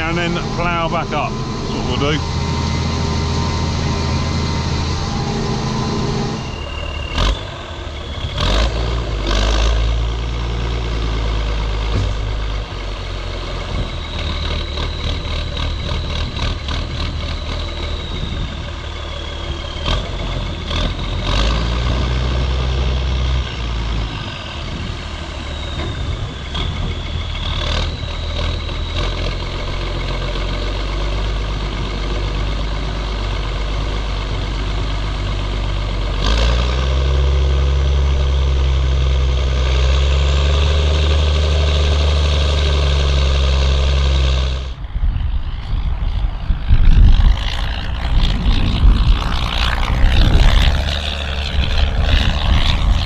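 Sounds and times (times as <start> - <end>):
tractor diesel engine running: 0.0 - 53.0
thin high whistle: 0.3 - 8.7.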